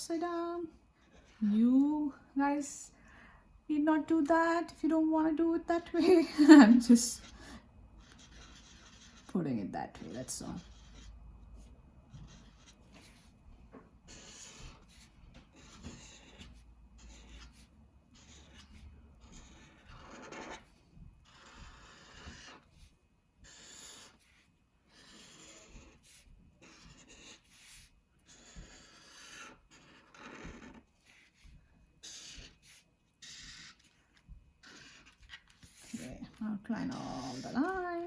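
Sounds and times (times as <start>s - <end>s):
marker scratching on paper: 0.1s - 2.0s, 6.0s - 38.0s.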